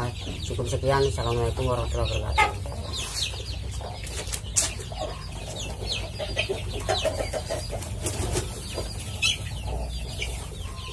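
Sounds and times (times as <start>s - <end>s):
chickens clucking: 0.0s - 10.9s.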